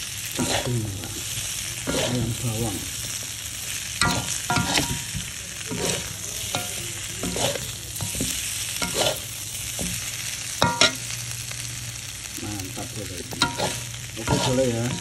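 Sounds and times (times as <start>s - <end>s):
food sizzling in a pan: 0.0s - 15.0s
metal spatula clanking on pan: 4.0s - 9.2s, 10.6s - 11.0s, 13.3s - 15.0s.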